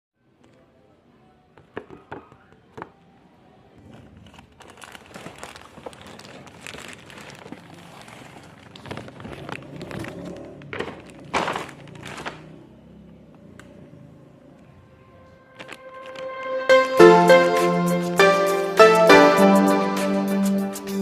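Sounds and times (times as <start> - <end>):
packaging crinkling and rustling: 3.8 - 12.5, 15.5 - 16.4.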